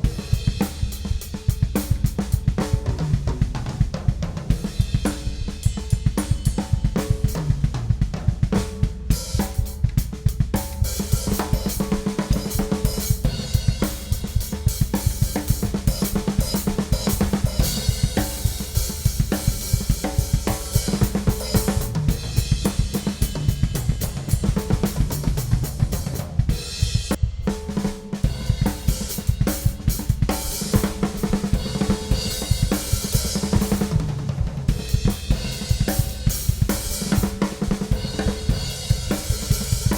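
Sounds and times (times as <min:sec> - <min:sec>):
drum kit playing rock groove: 0:00.0 - 0:39.9.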